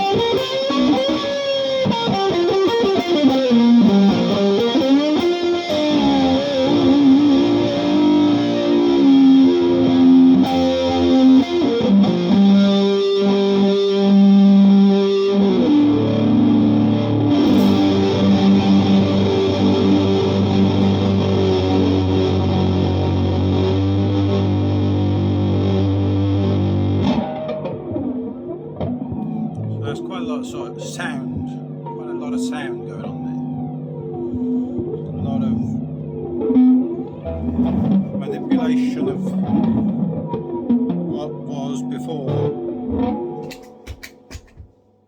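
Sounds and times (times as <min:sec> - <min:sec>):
distorted electric guitar: 0:00.0 - 0:44.4.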